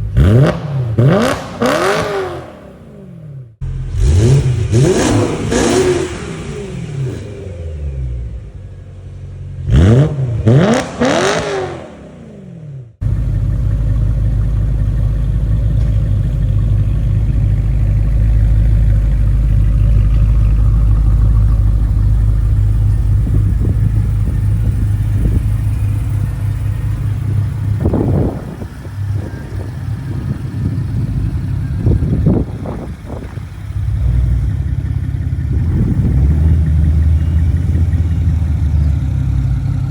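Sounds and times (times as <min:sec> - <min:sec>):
car engine revving: 0:00.0 - 0:39.9
low engine drone: 0:10.2 - 0:39.9.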